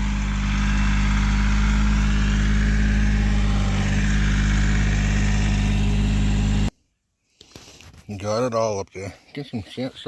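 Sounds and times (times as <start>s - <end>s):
engine idling: 0.0s - 6.7s.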